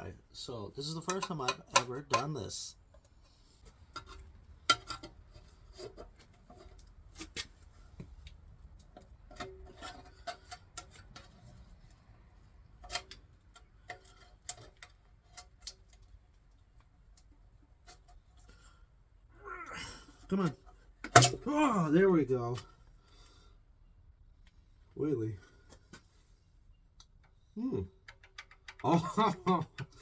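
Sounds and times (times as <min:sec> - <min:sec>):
hand tools clinking on metal: 0:00.8 - 0:02.4.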